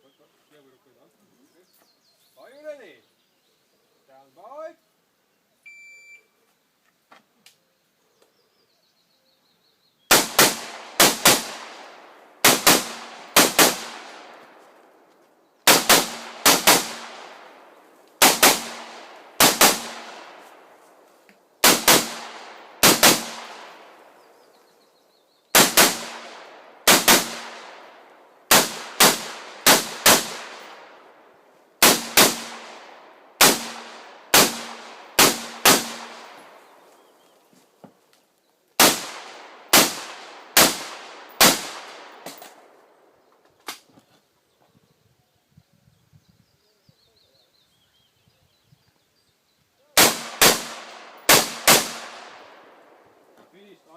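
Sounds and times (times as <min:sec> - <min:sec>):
shot timer beep: 0:05.7 - 0:06.2
rifle shots with echo: 0:10.1 - 0:14.6, 0:15.6 - 0:20.8, 0:21.6 - 0:24.2, 0:25.5 - 0:36.8, 0:38.8 - 0:42.8, 0:50.0 - 0:53.4.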